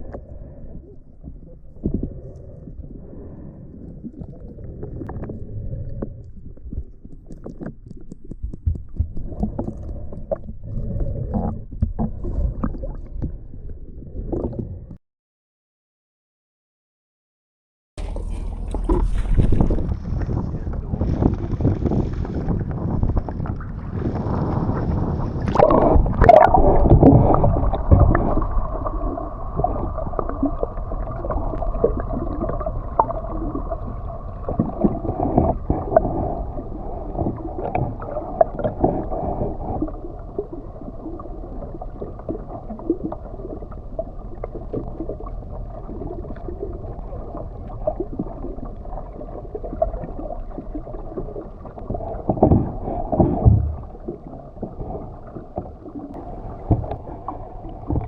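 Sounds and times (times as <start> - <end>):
water gurgling along hull: 0.0 - 15.0, 18.0 - 58.0
boat engine hum: 18.0 - 58.0.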